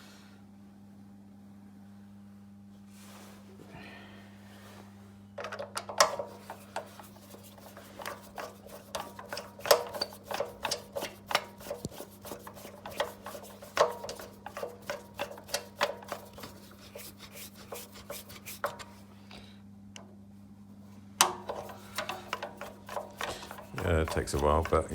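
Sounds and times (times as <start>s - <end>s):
screwdriver clicking and scraping: 5.4s - 18.9s, 21.2s - 24.9s.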